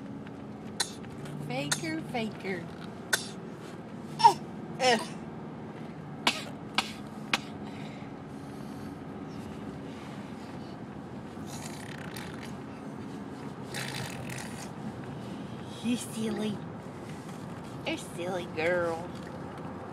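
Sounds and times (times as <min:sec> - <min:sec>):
person fake coughing: 0:03.1 - 0:03.4, 0:04.2 - 0:05.2, 0:06.3 - 0:07.6.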